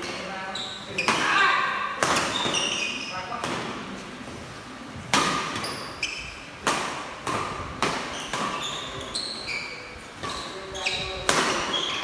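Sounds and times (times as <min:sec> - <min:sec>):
sharp slaps or knocks: 0:05.1 - 0:05.6.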